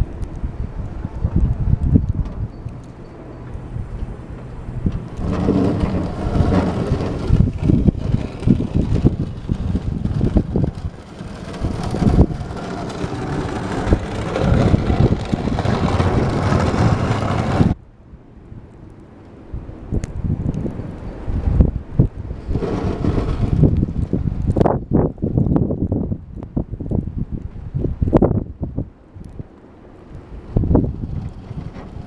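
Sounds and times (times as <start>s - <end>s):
plough blade scraping snow: 2.8s - 17.8s, 22.4s - 24.1s, 30.6s - 32.0s.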